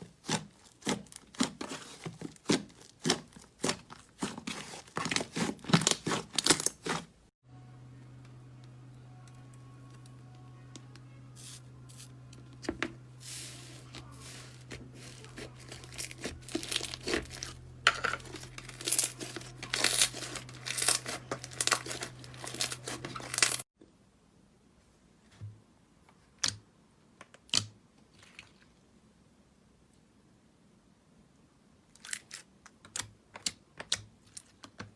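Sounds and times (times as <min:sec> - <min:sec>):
low steady hum: 0:07.4 - 0:23.6
slime crackling and popping: 0:15.0 - 0:17.6.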